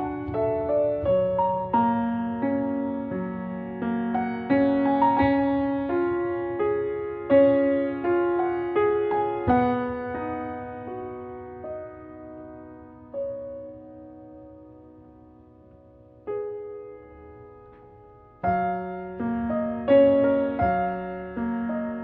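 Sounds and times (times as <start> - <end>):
soft piano music: 0.0 - 22.0.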